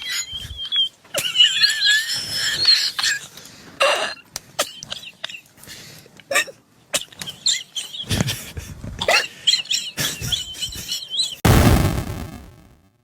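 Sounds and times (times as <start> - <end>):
man wheezing laughter: 8.0 - 11.3.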